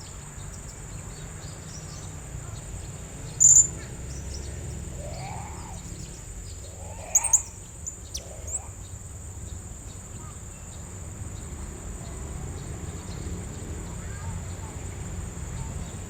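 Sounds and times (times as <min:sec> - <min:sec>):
high insect drone: 0:00.0 - 0:16.0
parrot high chirps: 0:06.7 - 0:08.8.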